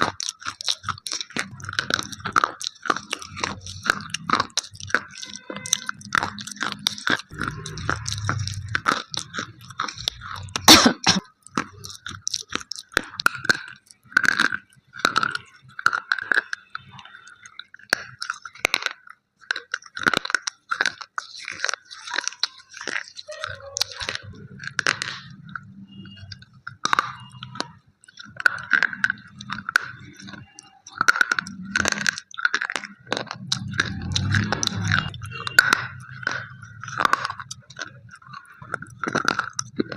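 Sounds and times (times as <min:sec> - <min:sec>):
teeth crunching chalky sticks: 0:00.0 - 0:39.9.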